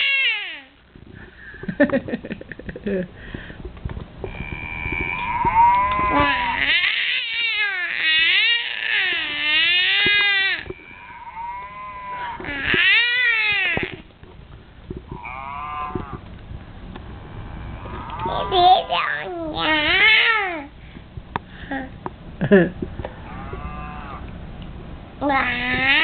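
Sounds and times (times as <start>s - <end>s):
child mooing like a cow: 4.3s - 14.0s, 15.2s - 16.2s, 23.3s - 24.3s, 25.2s - 26.0s.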